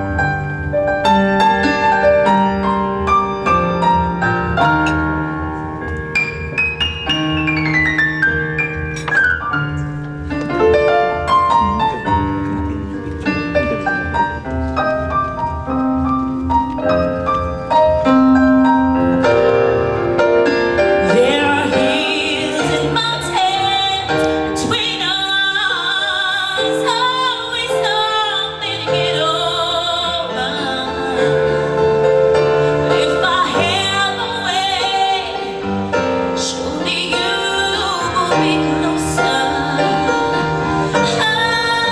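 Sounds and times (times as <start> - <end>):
slow piano playing: 0.0 - 41.9
person singing with vibrato: 20.7 - 41.9.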